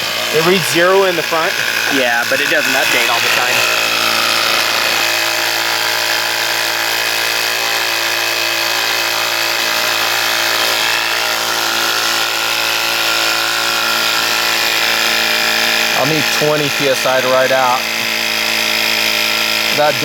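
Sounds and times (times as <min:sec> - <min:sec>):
electric tire pump motor hum: 0:00.0 - 0:20.0.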